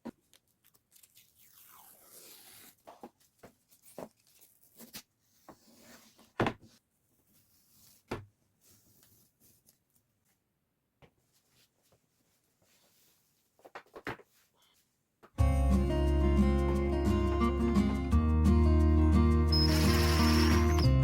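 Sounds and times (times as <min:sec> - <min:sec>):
rustling and scraping: 0:02.4 - 0:10.4, 0:11.2 - 0:15.0.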